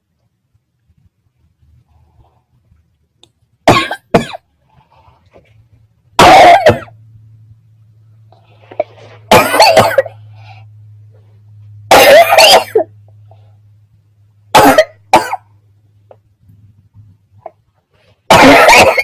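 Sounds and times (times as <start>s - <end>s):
person coughing: 3.7s - 4.4s, 6.2s - 6.9s, 9.3s - 10.2s, 11.9s - 12.9s, 14.5s - 15.5s, 18.3s - 19.0s.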